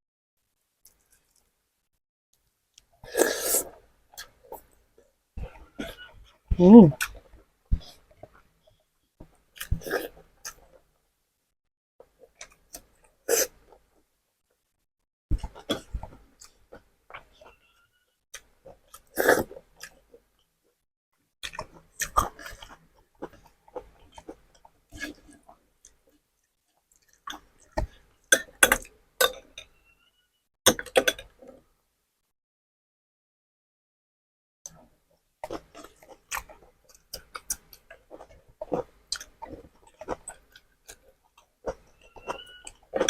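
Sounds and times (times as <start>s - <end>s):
close chewing: 21.4s - 28.0s, 35.4s - 43.0s.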